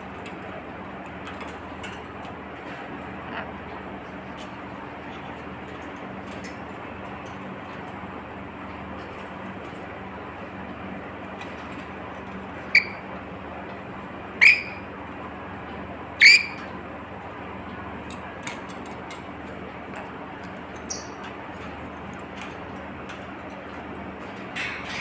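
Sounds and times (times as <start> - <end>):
parrot squawking: 12.7 - 13.0, 14.4 - 14.8, 16.2 - 16.6.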